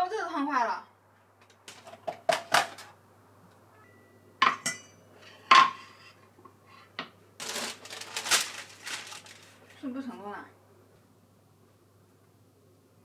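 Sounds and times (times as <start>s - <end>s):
metal utensils clinking on cookware: 1.7s - 2.9s, 4.4s - 6.0s, 7.4s - 9.5s.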